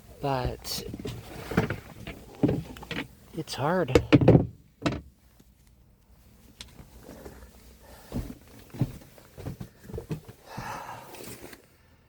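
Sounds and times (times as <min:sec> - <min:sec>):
short breath: 0:10.4 - 0:11.3.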